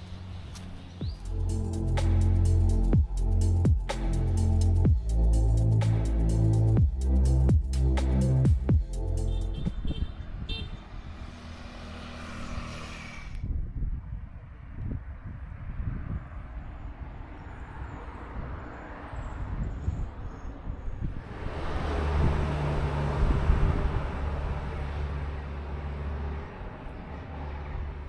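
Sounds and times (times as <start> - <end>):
low outdoor rumble: 0.0 - 11.8
engine passing by: 0.0 - 13.5, 21.2 - 28.0.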